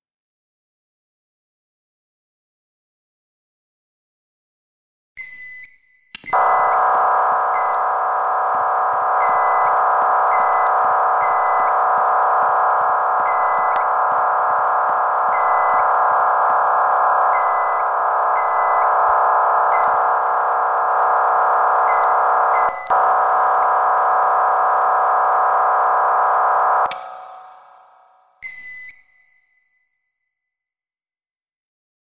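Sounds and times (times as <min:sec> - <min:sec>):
high alarm beeps: 0:05.2 - 0:29.4
fire alarm buzzing horn: 0:06.4 - 0:28.0.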